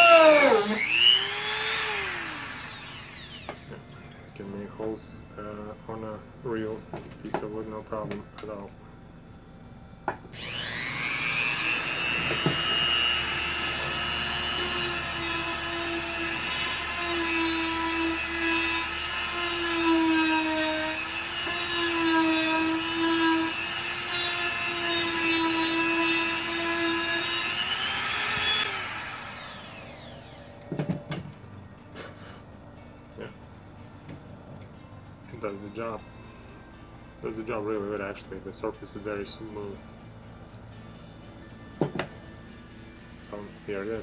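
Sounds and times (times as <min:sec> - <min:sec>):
rotary tool whining on wood: 0:00.0 - 0:03.9, 0:10.3 - 0:31.5.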